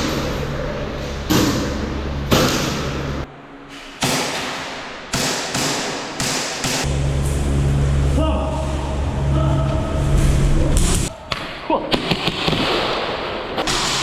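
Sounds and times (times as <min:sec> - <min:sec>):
low bass drone: 0:00.0 - 0:03.6, 0:06.8 - 0:11.3
heavy echoing hits: 0:00.0 - 0:14.0.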